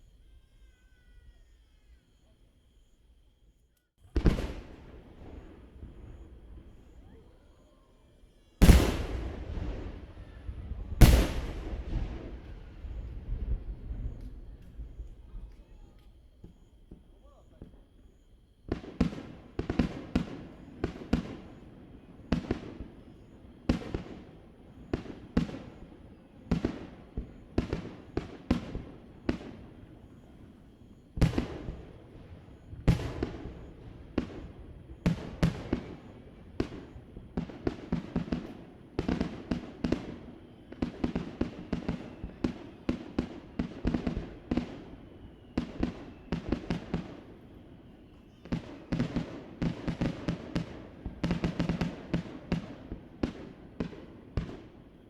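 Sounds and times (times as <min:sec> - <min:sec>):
fireworks shells bursting with echo: 0:08.6 - 0:18.2.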